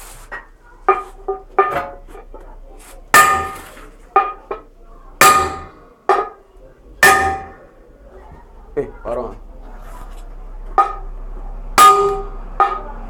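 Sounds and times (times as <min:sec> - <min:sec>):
metal struck with bell-like ring: 0:11.8 - 0:12.9.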